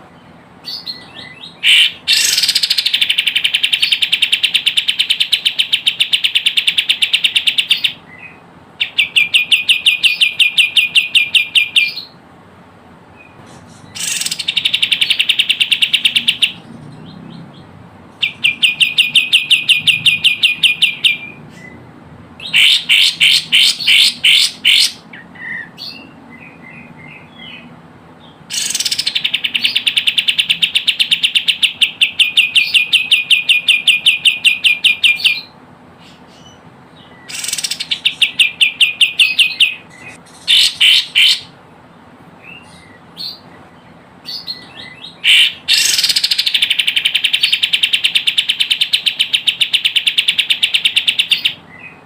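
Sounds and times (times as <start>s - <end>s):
bird song of rapid high notes: 0.0s - 12.2s, 13.1s - 52.0s
soft bird chirps: 42.4s - 52.0s.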